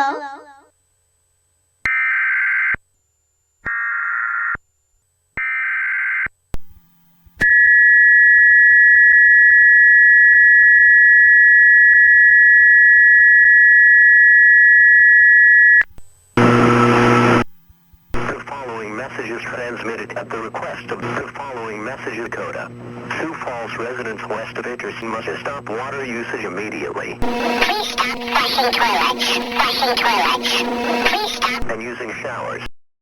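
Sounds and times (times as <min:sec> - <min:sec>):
screechy data tone bursts: 0:07.3 - 0:15.9, 0:27.2 - 0:31.6
two-tone attention signal: 0:27.2 - 0:31.6
loud buzzy burst: 0:27.2 - 0:31.7.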